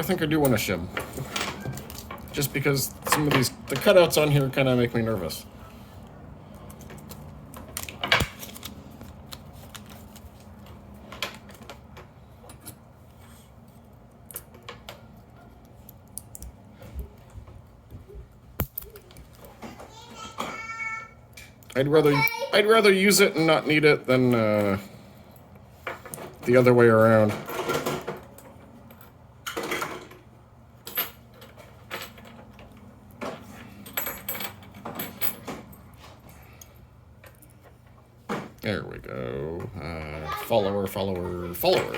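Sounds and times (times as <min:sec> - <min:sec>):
metal clicks of padlock and tools: 0:18.6 - 0:19.4.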